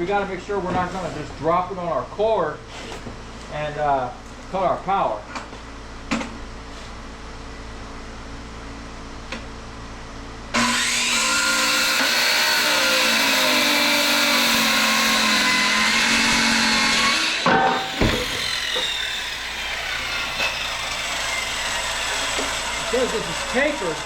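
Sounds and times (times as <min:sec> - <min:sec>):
power saw cutting metal: 0:10.5 - 0:24.0
sharp knocks: 0:17.4 - 0:19.0.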